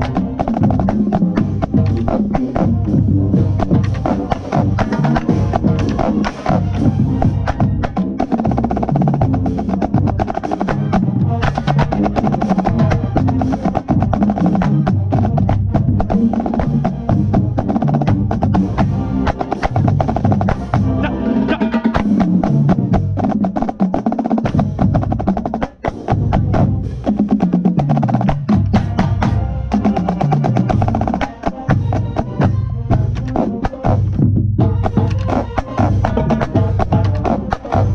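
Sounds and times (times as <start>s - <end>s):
snare drum rolls: 0.0s - 21.0s
marching band playing funk: 0.0s - 37.9s.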